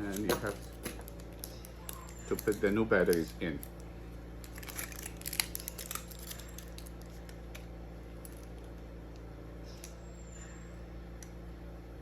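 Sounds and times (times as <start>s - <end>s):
batteries and key fob clicking: 0.0s - 3.8s
steady low hum: 0.0s - 12.0s.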